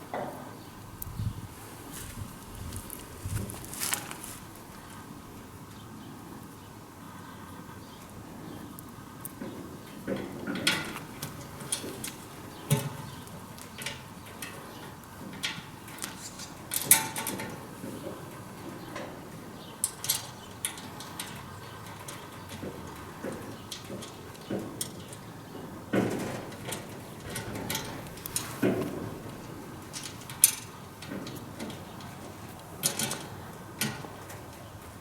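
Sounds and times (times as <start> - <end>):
metal parts clinking and knocking: 29.9 - 34.0.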